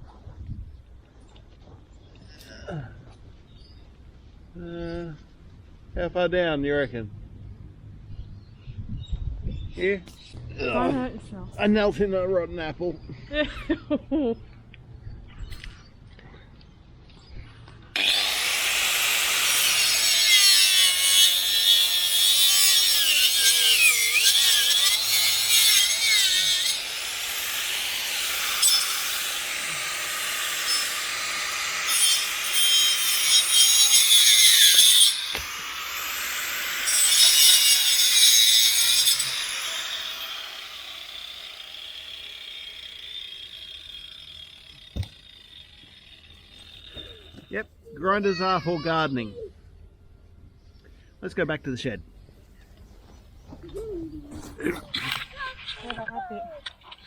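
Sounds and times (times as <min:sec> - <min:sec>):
angle grinder cutting wood: 0:18.0 - 0:47.6.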